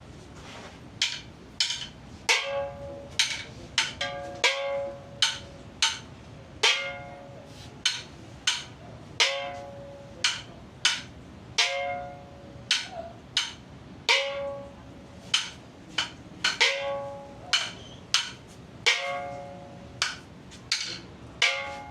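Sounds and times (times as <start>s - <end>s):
small gong ringing: 2.3s - 3.3s, 4.0s - 5.6s, 6.6s - 7.5s, 9.2s - 10.6s, 11.6s - 13.1s, 14.1s - 14.9s, 16.6s - 17.8s, 18.8s - 20.2s, 21.4s - 21.9s.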